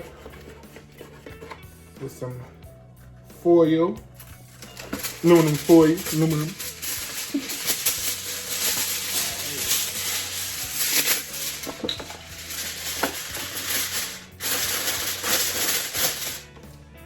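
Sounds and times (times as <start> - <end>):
aluminium foil crinkling: 4.2 - 16.5.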